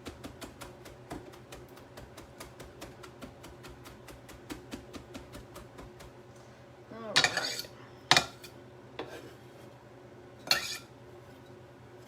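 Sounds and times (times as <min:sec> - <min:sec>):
pepper crackling and popping in pan: 0:00.0 - 0:06.2.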